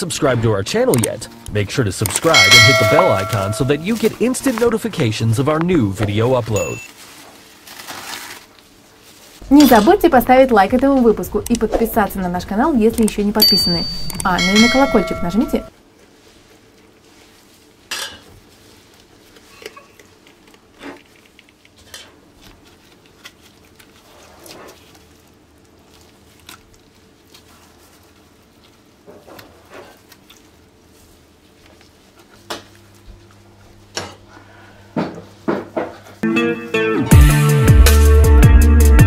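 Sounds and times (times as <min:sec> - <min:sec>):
dishes and utensils clinking: 0:02.1 - 0:04.2, 0:13.4 - 0:15.7.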